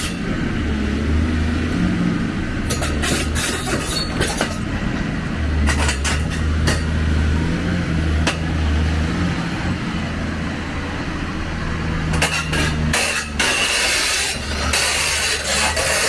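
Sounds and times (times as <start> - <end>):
diesel engine running: 0.0 - 16.0
metallic clanks and knocks: 2.6 - 7.0, 12.1 - 13.7.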